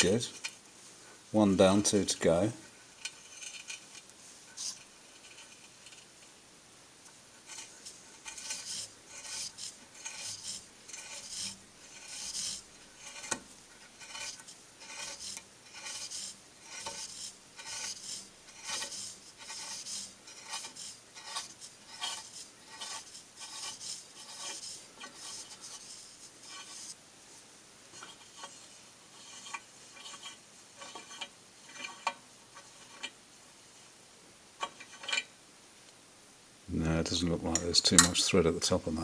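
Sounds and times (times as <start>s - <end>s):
scraping on metal: 0.0s - 0.6s, 1.6s - 6.2s, 7.4s - 27.0s, 27.9s - 33.2s, 34.6s - 35.3s.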